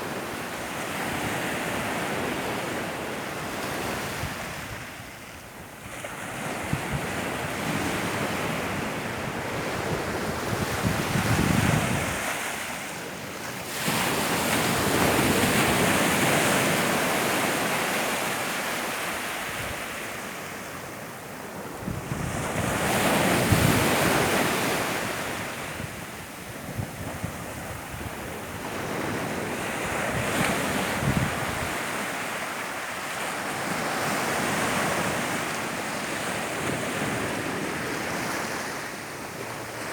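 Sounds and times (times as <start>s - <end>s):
wind on microphone: 3.8s - 12.7s, 21.6s - 32.0s.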